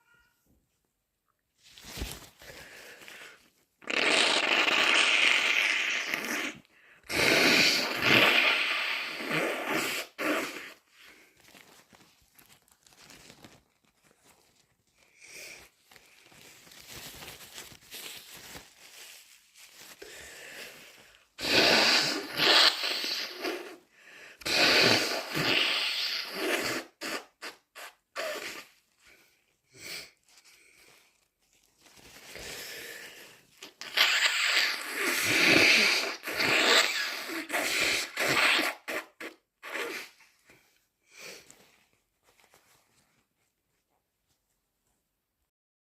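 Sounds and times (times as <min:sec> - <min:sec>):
person blowing nose: 0:02.0 - 0:11.5, 0:19.8 - 0:30.9, 0:32.2 - 0:41.7
person breathing: 0:02.3 - 0:03.6, 0:19.8 - 0:21.4, 0:23.8 - 0:24.4, 0:32.1 - 0:33.6.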